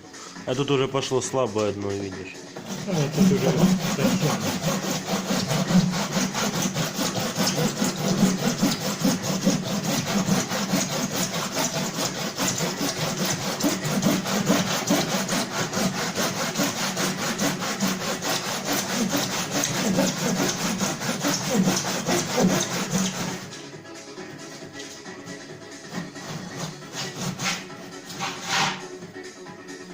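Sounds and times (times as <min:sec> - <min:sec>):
saw cutting through metal: 0:02.4 - 0:23.6, 0:25.8 - 0:29.0.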